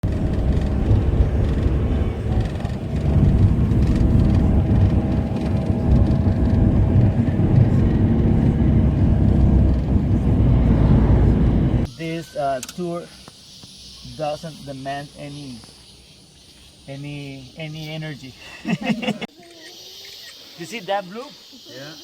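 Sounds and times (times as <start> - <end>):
vehicle engine rumbling: 0.0 - 11.9.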